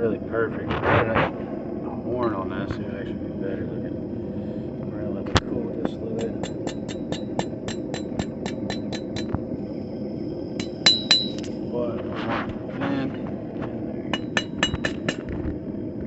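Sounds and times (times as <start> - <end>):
steady low rumble: 0.0 - 16.0
hammer striking steel on anvil: 6.2 - 9.4, 10.6 - 11.6, 14.1 - 15.3.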